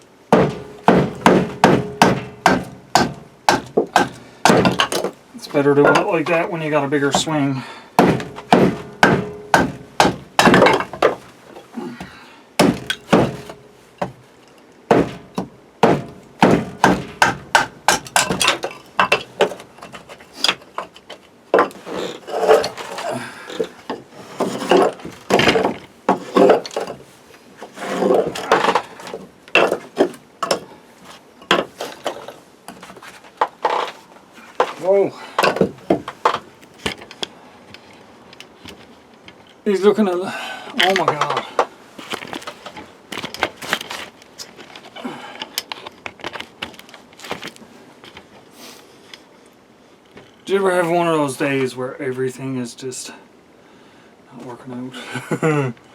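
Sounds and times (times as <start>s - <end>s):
axe chopping wood: 0.3s - 5.1s, 8.0s - 11.3s, 12.0s - 14.2s, 14.9s - 19.7s
wood pieces knocking together: 0.3s - 5.2s, 8.0s - 27.1s, 27.9s - 30.7s, 31.4s - 34.0s, 40.8s - 44.8s.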